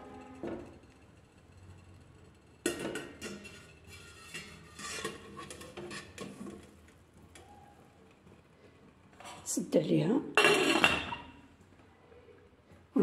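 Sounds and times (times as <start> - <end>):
metal cookware clattering: 2.6 - 6.8, 10.4 - 11.4.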